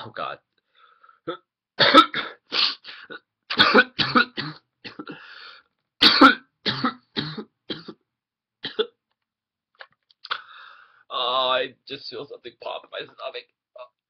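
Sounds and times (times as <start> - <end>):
person breathing in: 0.6 - 1.2, 5.1 - 5.7, 10.3 - 11.1
person coughing: 1.8 - 5.4, 6.0 - 8.0.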